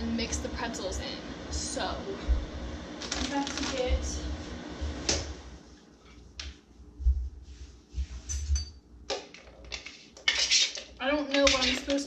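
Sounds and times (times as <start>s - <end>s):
dishes and utensils clinking: 8.2s - 12.0s.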